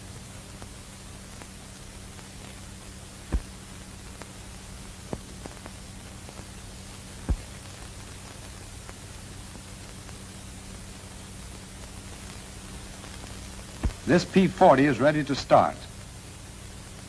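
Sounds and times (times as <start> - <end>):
film soundtrack hiss and hum: 0.0 - 17.0
sharp clicks and pops: 7.2 - 9.0, 11.5 - 14.3.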